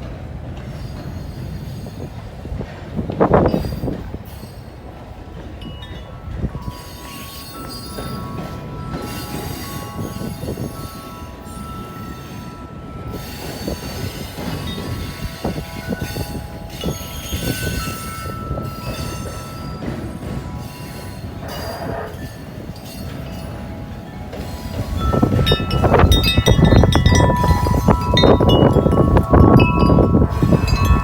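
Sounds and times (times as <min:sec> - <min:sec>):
railroad cars rumbling: 0:00.0 - 0:31.0
train wheel clatter: 0:00.0 - 0:31.0
wheel squeal: 0:16.9 - 0:23.3.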